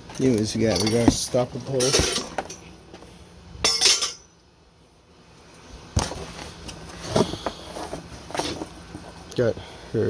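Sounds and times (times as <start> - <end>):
metal poles clinking and clattering: 0.1 - 2.7, 3.6 - 4.3.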